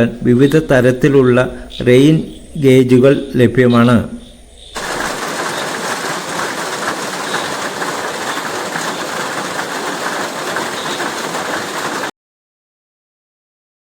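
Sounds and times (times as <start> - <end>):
heavy rain: 4.8 - 12.1.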